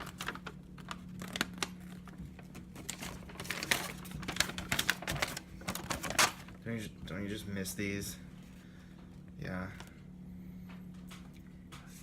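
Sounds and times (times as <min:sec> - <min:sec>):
paper and cardboard rustling: 0:00.0 - 0:06.6
low steady hum: 0:00.0 - 0:12.0.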